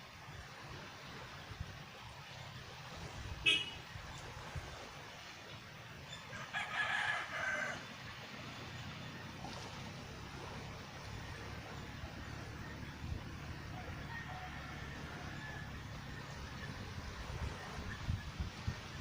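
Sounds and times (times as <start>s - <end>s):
rooster crowing: 6.3s - 7.9s, 13.6s - 16.0s.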